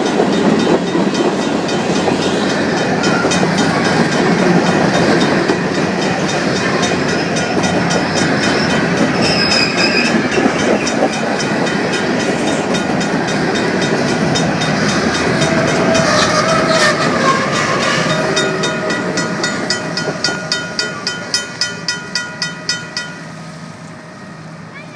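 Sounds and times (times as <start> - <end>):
freight train wheels clattering on rails: 0.0 - 23.4
mechanical crossing bell ringing: 17.5 - 23.4.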